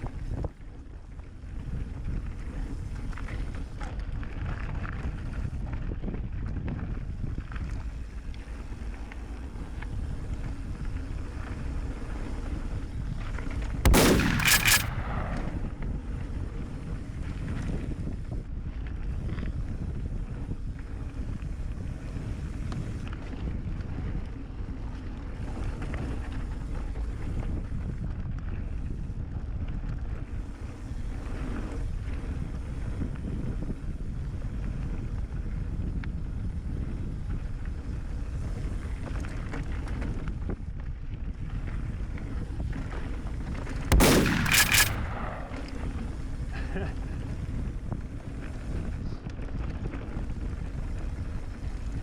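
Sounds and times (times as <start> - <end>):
loud bang and clatter: 13.9 - 15.8, 43.9 - 46.4
bike tyre rumble: 45.4 - 52.0.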